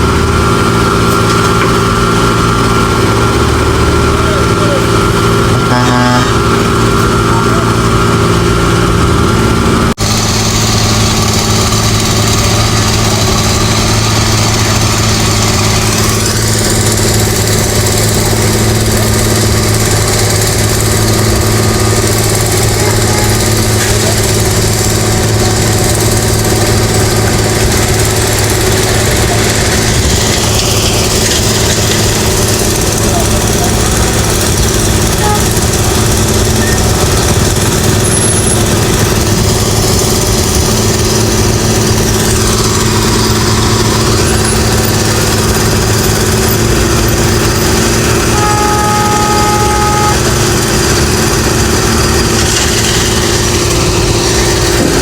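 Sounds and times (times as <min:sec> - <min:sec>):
heavy machinery engine running: 0:00.0 - 0:55.0.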